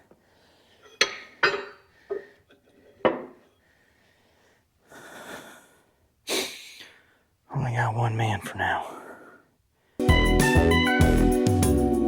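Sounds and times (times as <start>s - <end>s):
person breathing hard: 3.6s - 7.3s.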